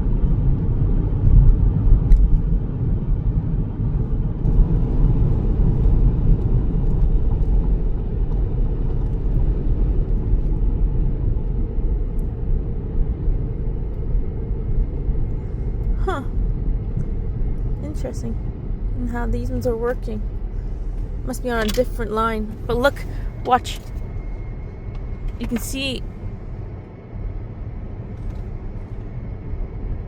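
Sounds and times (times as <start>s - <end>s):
car noise: 14.4s - 26.8s.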